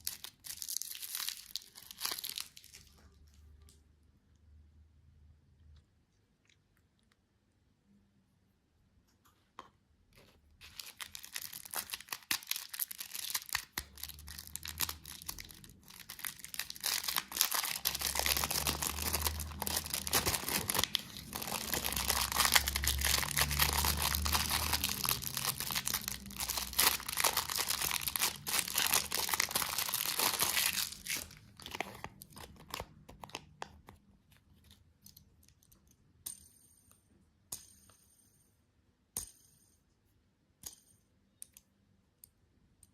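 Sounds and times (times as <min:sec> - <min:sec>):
candy wrapper crinkling: 0:00.0 - 0:03.0, 0:10.6 - 0:34.8.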